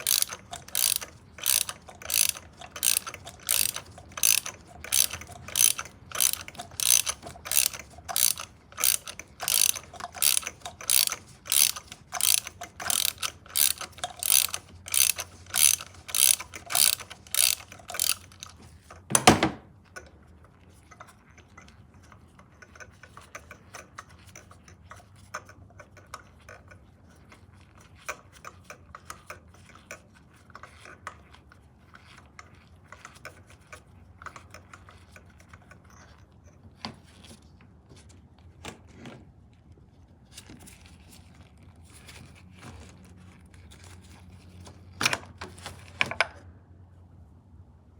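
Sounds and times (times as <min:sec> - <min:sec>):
ratchet wrench clicking: 0:00.0 - 0:18.6.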